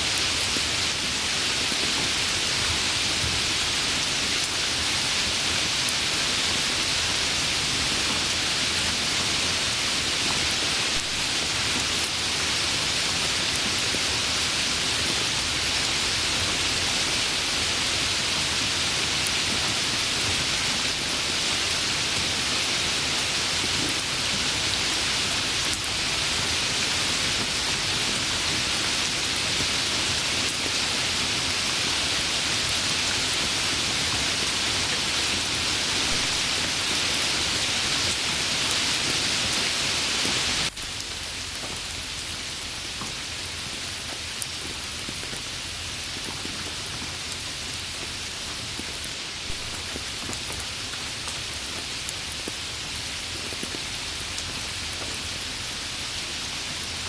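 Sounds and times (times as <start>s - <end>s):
heavy rain hiss: 0.0s - 57.0s
light rain with drops: 0.0s - 57.0s.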